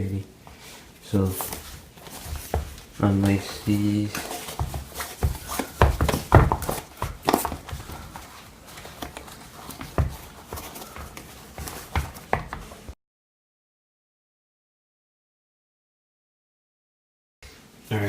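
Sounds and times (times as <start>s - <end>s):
shoe rustling and knocks: 1.2s - 13.0s.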